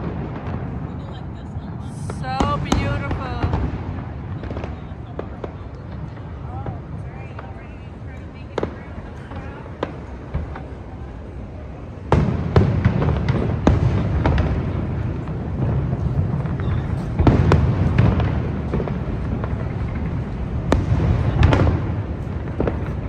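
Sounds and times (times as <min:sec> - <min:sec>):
fireworks bangs and crackles: 0:00.0 - 0:23.0
sharp firework crack: 0:12.1 - 0:23.0.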